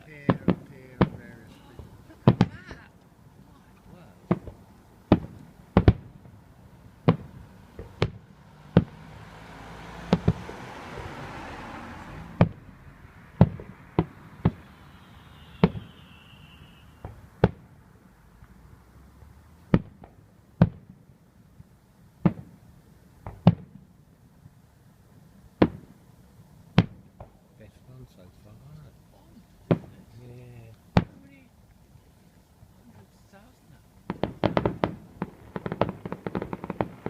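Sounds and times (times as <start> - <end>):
fireworks bangs: 0.0 - 12.7, 13.3 - 18.0, 19.6 - 24.6, 25.2 - 28.8, 29.4 - 31.6, 32.6 - 37.0
fireworks hiss: 13.6 - 17.4
faint falling whistle: 14.6 - 17.2.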